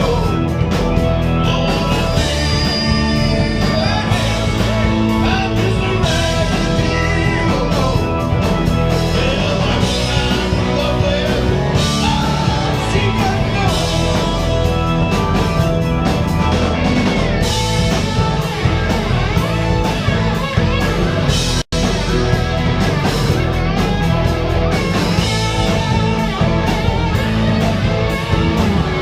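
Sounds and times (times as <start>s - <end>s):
person singing: 0.0s - 15.1s
rock band playing: 0.0s - 29.0s
steady drum beat: 0.0s - 29.0s.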